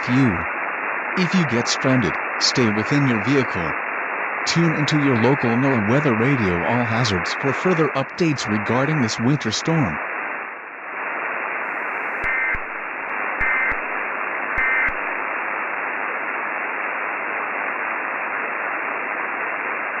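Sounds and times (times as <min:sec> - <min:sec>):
radio static hiss: 0:00.0 - 0:20.0
warbling data bursts: 0:14.6 - 0:15.0.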